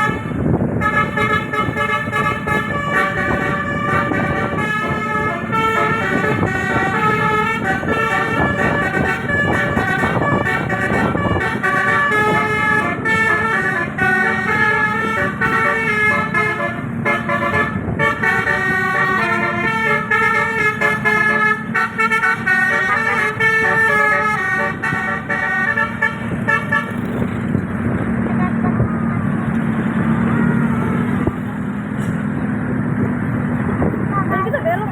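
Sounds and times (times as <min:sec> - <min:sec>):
multi-note bus air horn melody: 0:00.0 - 0:27.2
bus engine running: 0:00.0 - 0:34.9.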